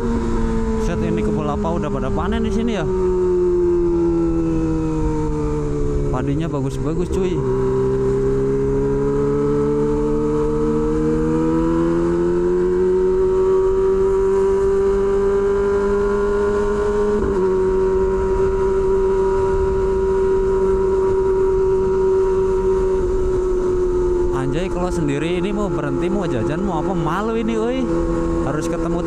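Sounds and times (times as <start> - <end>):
motorcycle engine at road speed: 0.0 - 29.0
wind rumble on microphone: 13.5 - 25.5.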